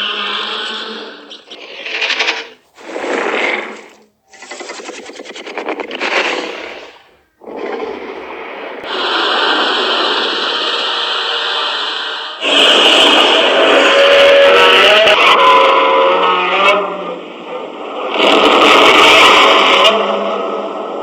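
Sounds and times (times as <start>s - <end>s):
harsh rasping monster roars: 8.8s - 21.0s.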